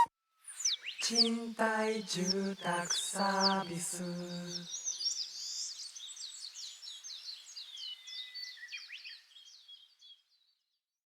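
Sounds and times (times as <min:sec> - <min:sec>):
person imitating birdsong: 0:01.0 - 0:04.8.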